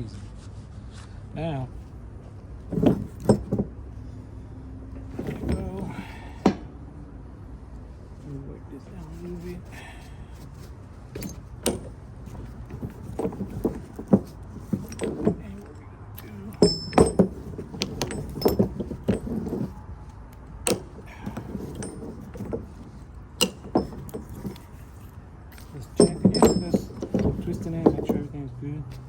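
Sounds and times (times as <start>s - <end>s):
metal chain clinking and rattling: 2.6s - 3.9s, 5.0s - 6.7s, 10.4s - 28.4s.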